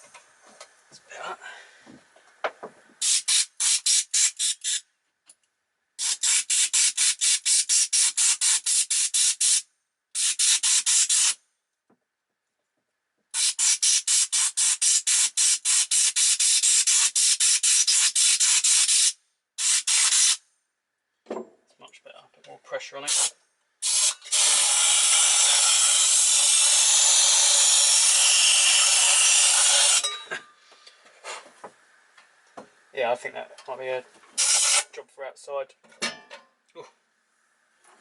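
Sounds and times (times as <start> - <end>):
pulsing air jet hiss: 3.0 - 4.8.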